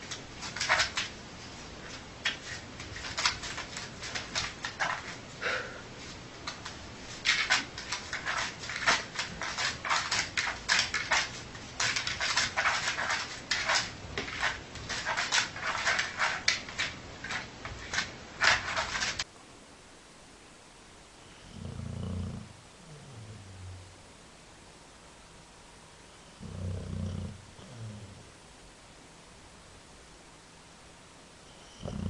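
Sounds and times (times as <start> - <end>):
dog snoring: 21.3 - 23.8, 26.2 - 28.3, 31.5 - 32.0.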